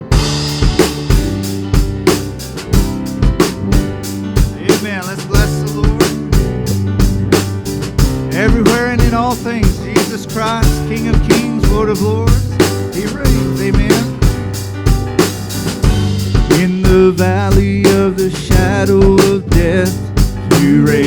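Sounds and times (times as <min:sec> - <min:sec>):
drum kit steady beat: 0:00.0 - 0:21.0
worship band playing: 0:00.0 - 0:21.0
person singing: 0:04.6 - 0:06.4, 0:08.3 - 0:14.3, 0:16.5 - 0:21.0.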